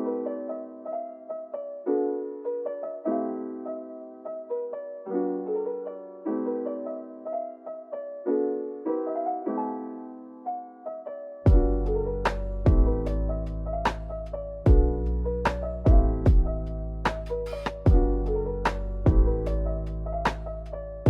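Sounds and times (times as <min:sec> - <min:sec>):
slow piano melody: 0:00.0 - 0:21.0
drums: 0:11.5 - 0:13.2, 0:13.9 - 0:19.6, 0:20.3 - 0:20.8
bass: 0:11.5 - 0:21.0.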